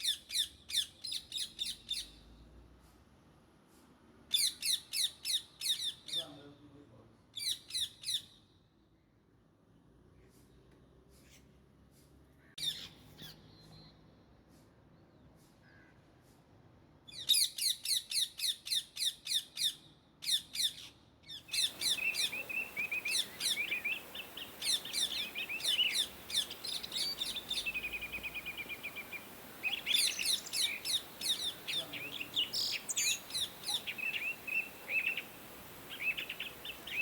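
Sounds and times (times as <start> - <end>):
parakeets chirping shrilly: 21.5 - 37.0.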